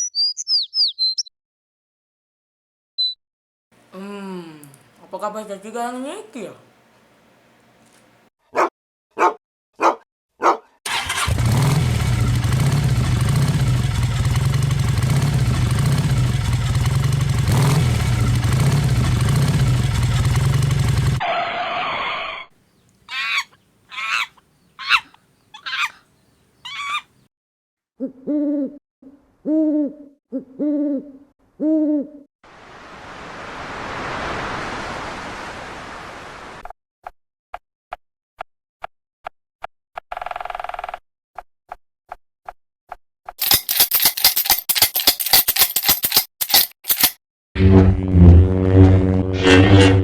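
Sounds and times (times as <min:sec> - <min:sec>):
short calls: 0:22.9 - 0:27.2
pitched hooting calls: 0:23.1 - 0:27.1.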